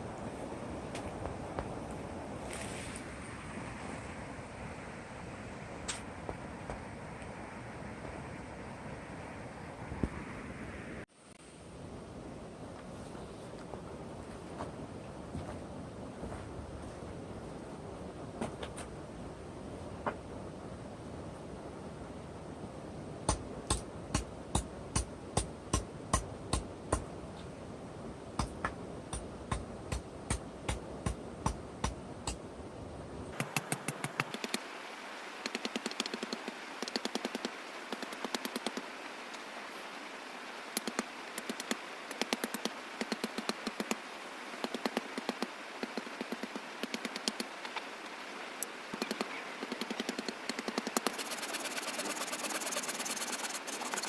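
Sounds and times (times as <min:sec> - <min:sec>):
steady hiss: 0:17.8 - 0:54.0.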